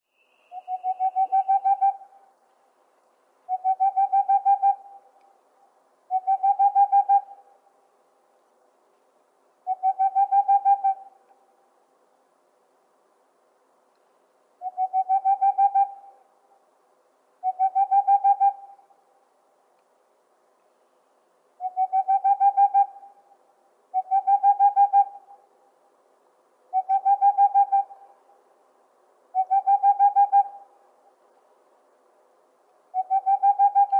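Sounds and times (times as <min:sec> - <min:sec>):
owl trilling hoots: 0:00.3 - 0:02.1, 0:03.5 - 0:05.0, 0:14.6 - 0:16.2, 0:17.4 - 0:18.8, 0:21.6 - 0:23.2, 0:23.9 - 0:25.3, 0:26.7 - 0:28.2, 0:29.3 - 0:30.7, 0:32.9 - 0:33.9.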